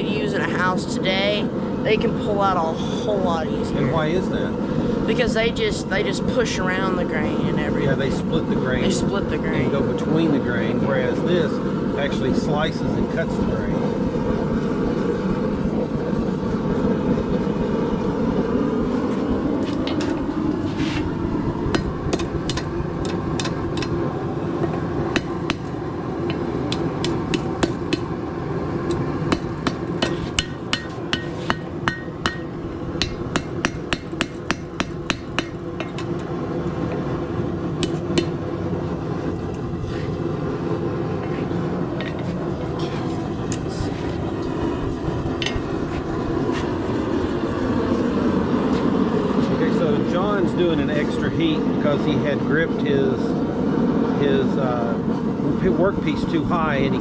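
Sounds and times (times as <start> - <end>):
hammer striking steel on anvil: 29.3 - 36.1.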